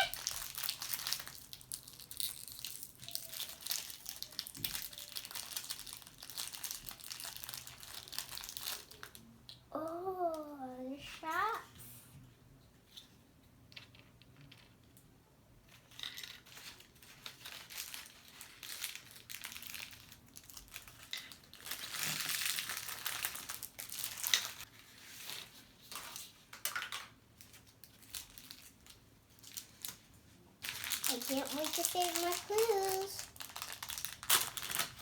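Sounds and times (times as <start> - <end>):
plastic wrapping crinkling and tearing: 0.0 - 9.2, 16.3 - 35.0.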